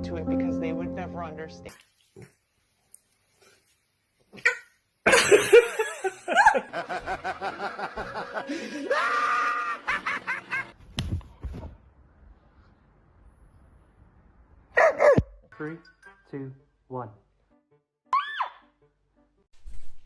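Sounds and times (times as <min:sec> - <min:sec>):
person laughing hard: 0:05.1 - 0:10.7.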